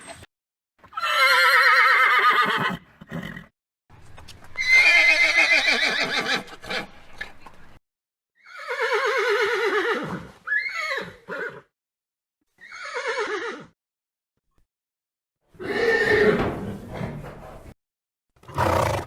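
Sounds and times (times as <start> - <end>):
horse whinnying: 0.9 - 3.5, 4.6 - 6.9, 8.4 - 11.7, 12.6 - 13.7, 15.6 - 17.8, 18.4 - 19.0.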